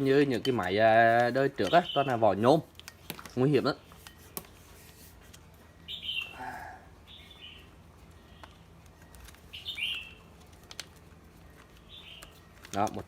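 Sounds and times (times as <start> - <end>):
small bird chirping: 1.6 - 2.4, 5.7 - 10.3, 11.4 - 12.8.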